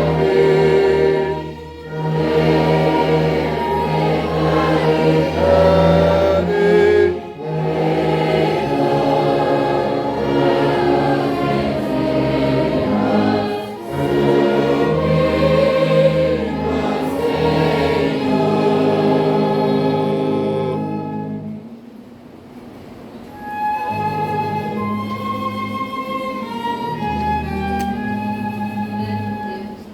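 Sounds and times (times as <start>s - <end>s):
choir singing a hymn: 0.0s - 21.8s.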